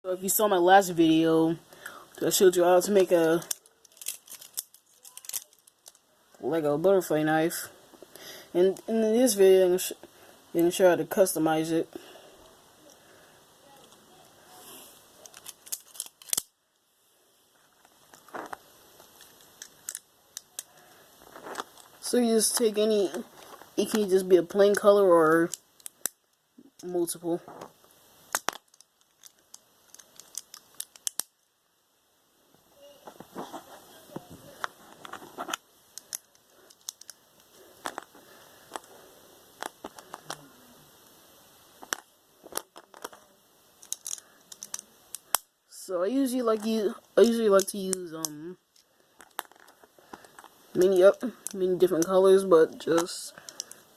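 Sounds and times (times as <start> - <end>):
plastic pieces clicking: 2.9 - 6.0, 15.2 - 16.5, 18.1 - 24.0, 28.3 - 31.4, 34.6 - 38.9, 39.5 - 40.4, 41.8 - 43.2, 43.8 - 45.4, 46.6 - 52.2, 52.9 - 53.9.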